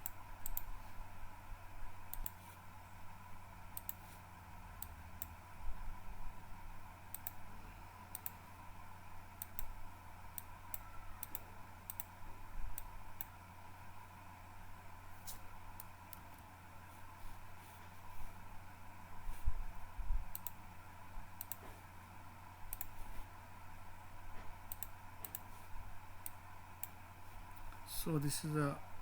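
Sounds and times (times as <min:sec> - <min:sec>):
computer mouse clicking: 0:00.0 - 0:00.7, 0:02.1 - 0:02.6, 0:03.8 - 0:04.1, 0:04.8 - 0:05.3, 0:07.1 - 0:07.4, 0:08.1 - 0:08.4, 0:09.4 - 0:09.7, 0:10.4 - 0:12.1, 0:12.7 - 0:13.3, 0:20.3 - 0:20.6, 0:21.4 - 0:21.7, 0:22.7 - 0:23.0, 0:24.7 - 0:25.5
low electrical hum: 0:00.0 - 0:29.0.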